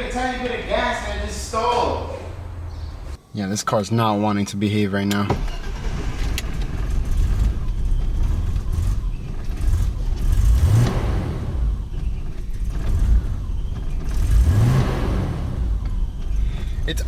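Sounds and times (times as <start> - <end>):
car engine idling and revving: 0.0 - 3.2, 5.3 - 17.0.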